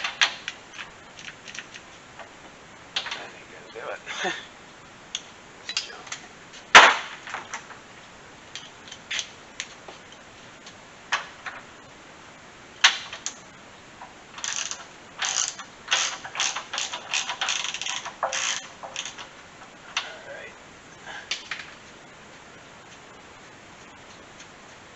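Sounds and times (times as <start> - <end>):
ratchet wrench clicking: 14.4 - 19.2.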